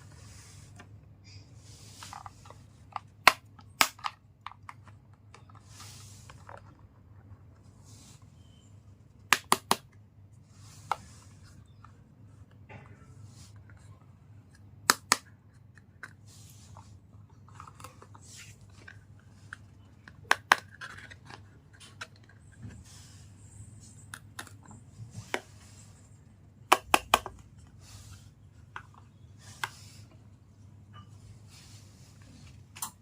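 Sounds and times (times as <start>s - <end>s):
plastic scraping and rustling: 15.9s - 23.4s.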